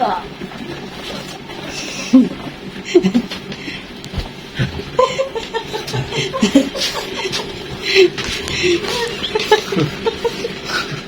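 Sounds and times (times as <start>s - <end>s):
person laughing and giggling: 2.9s - 3.4s, 5.0s - 11.0s.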